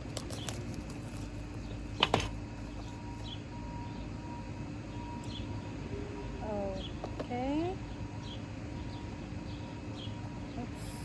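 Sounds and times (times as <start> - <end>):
packaging clicks: 0.0 - 2.4
low background hum: 0.0 - 11.0.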